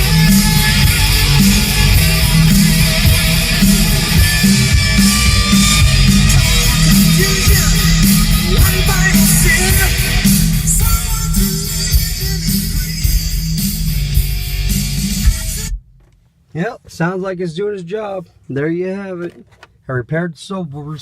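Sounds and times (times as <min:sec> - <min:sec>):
loud rock music: 0:00.0 - 0:15.8.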